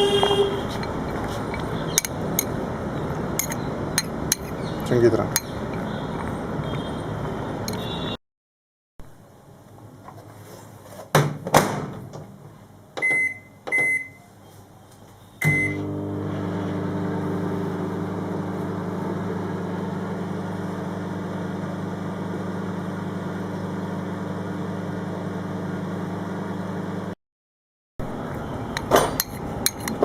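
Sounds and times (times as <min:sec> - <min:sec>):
keypad beeps: 0:13.0 - 0:14.2
microwave oven humming: 0:15.4 - 0:27.2.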